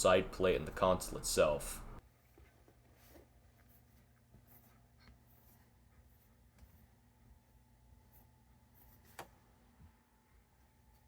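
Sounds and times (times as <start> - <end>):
low hum: 0.0 - 2.0.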